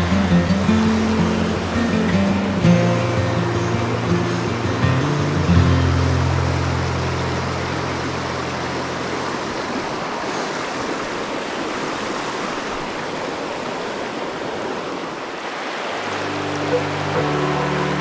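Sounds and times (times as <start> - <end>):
background music: 0.0 - 7.8, 16.2 - 18.0
mountain stream rushing: 0.0 - 18.0.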